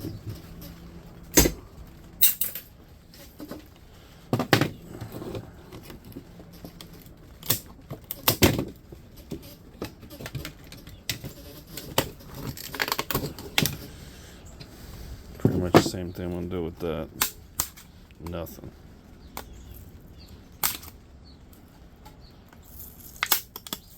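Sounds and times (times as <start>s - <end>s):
plastic and metal parts clattering: 0.0s - 14.0s.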